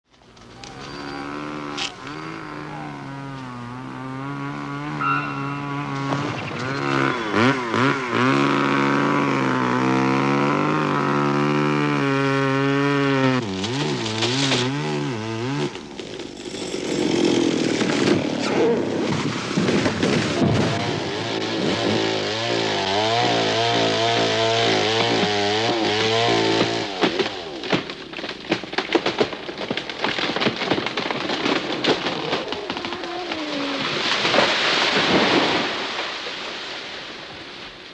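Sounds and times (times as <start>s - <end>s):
chainsaw revving: 0.8s - 36.0s.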